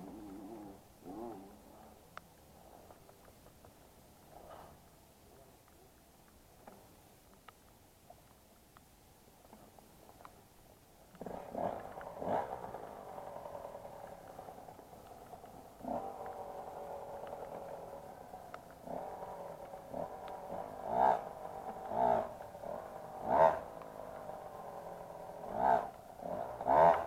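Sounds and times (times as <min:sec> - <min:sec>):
motorcycle engine idling: 0:11.2 - 0:27.0.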